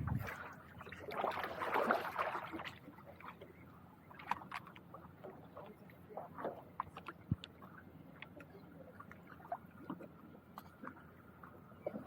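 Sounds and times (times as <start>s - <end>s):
kayak paddle splashing: 0.0s - 2.8s.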